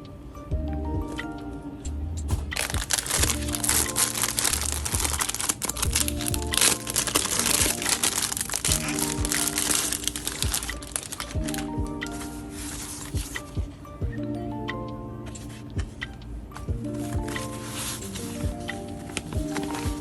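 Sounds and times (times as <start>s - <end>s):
background music: 0.0s - 20.0s
packaging crinkling: 2.6s - 11.7s, 17.2s - 20.0s.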